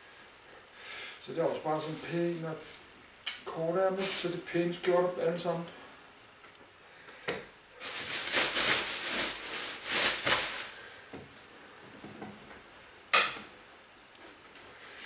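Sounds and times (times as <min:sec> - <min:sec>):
clothes rustling: 0:01.4 - 0:02.8, 0:04.0 - 0:04.4, 0:07.8 - 0:10.9.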